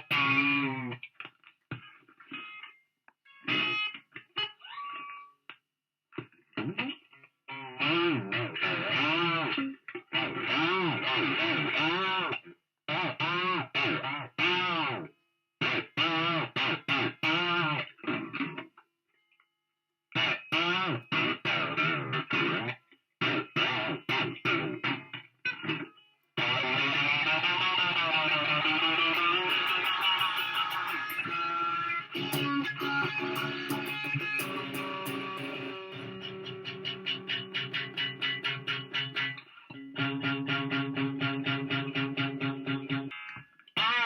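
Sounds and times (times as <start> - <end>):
distorted electric guitar notes: 0.0 - 0.9, 26.4 - 44.0.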